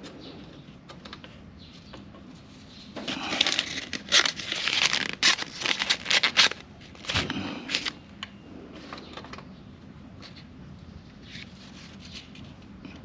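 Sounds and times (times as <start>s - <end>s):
rustling and crinkling: 0.0s - 8.0s.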